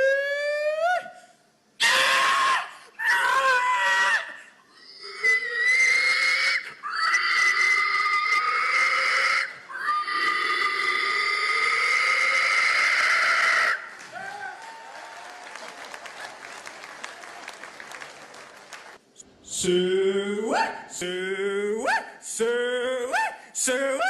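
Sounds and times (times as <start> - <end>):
person imitating pig squeals: 1.8 - 13.9.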